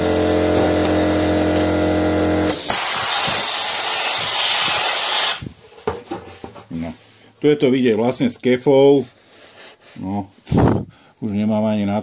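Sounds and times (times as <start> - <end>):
air compressor motor humming: 0.0 - 5.5
compressed air hissing: 2.5 - 5.5.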